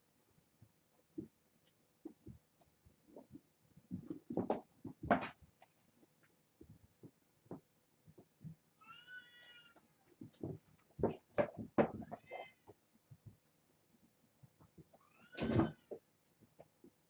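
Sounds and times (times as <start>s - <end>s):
sharp knocks and thumps: 3.1s - 5.4s, 10.2s - 12.2s
cat meowing: 8.8s - 9.8s.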